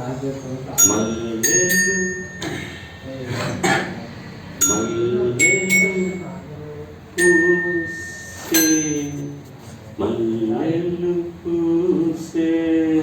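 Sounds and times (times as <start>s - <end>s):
bells ringing: 0.8s - 3.2s, 4.6s - 6.6s, 7.2s - 9.5s.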